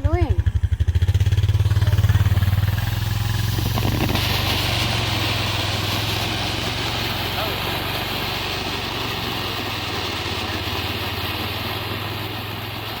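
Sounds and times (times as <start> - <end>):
engine idling: 0.0 - 13.0
steady hiss: 1.6 - 13.0.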